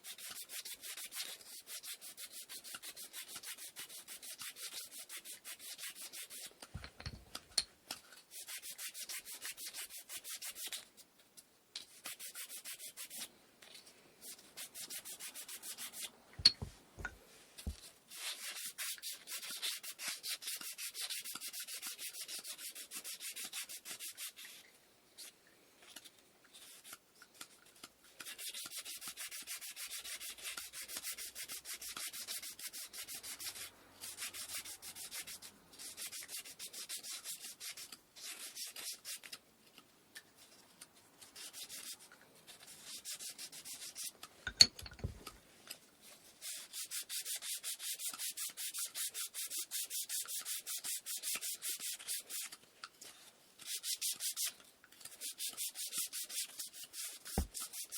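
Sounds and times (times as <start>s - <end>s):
sandpaper scraping wood: 0.0s - 6.5s, 8.3s - 10.8s, 11.9s - 13.3s, 14.2s - 16.1s, 18.1s - 24.5s, 28.2s - 39.3s, 55.2s - 57.9s
wooden piece knocking: 6.7s - 7.4s, 16.4s - 17.2s, 44.5s - 45.3s.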